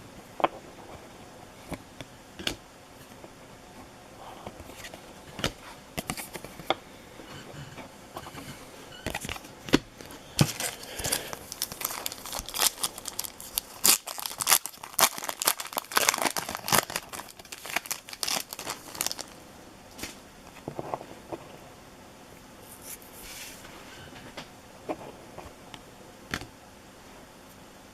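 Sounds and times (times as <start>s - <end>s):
foil wrappers crinkling: 10.0s - 19.4s.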